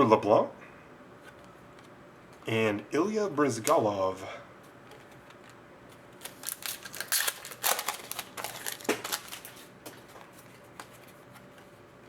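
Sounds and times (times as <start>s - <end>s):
foil wrapper crinkling: 5.0s - 11.0s.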